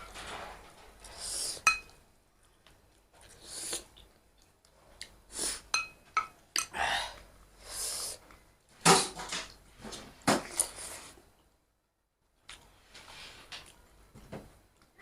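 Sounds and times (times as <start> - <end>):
spoon scraping a plate: 1.6 - 1.9.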